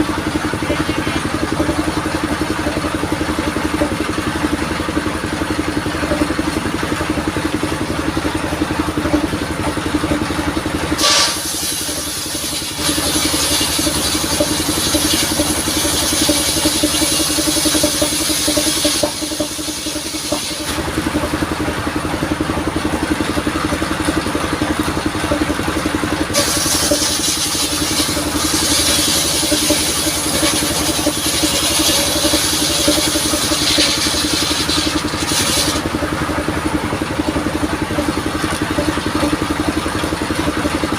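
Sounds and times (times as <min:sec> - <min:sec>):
engine running steadily: 0:00.0 - 0:40.9
saw cutting wood: 0:11.0 - 0:21.0, 0:26.3 - 0:36.0.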